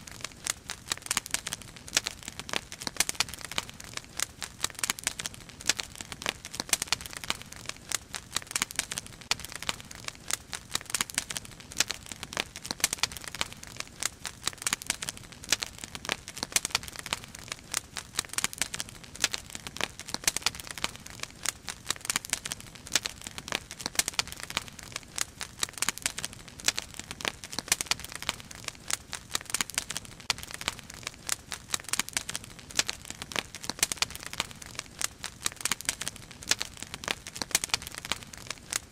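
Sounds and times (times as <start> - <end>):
wood fire crackling and popping: 0.0 - 38.9.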